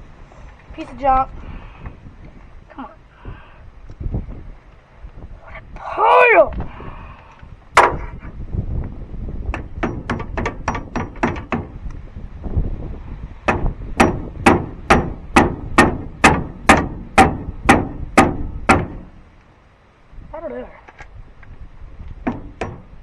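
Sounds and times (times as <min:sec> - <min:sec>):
hammer striking metal terminal: 0:09.5 - 0:11.8, 0:13.5 - 0:19.1, 0:22.2 - 0:23.0.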